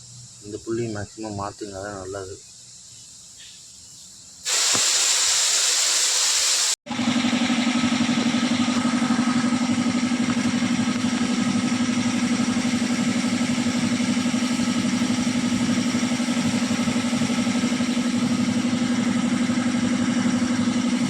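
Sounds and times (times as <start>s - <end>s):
car engine idling: 6.9s - 21.0s.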